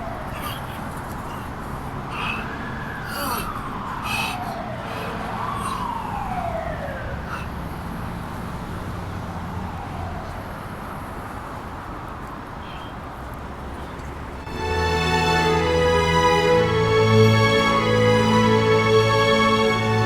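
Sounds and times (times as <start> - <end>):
siren wailing: 2.1 - 7.7.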